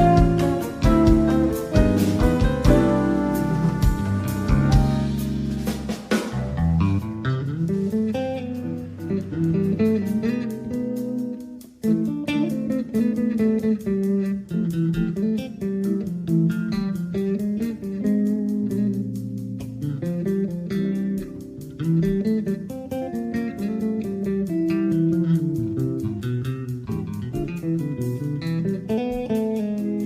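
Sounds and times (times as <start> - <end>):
bass line: 0.0 - 10.8
guitar background music: 0.0 - 30.0.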